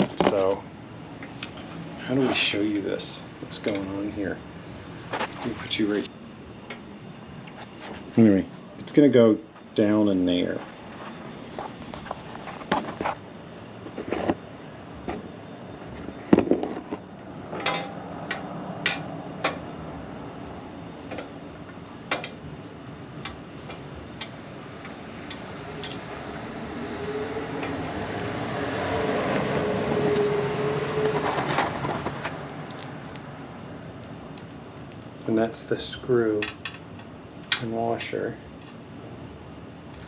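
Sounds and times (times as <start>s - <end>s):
low rumble with steady hum: 0.0s - 40.0s.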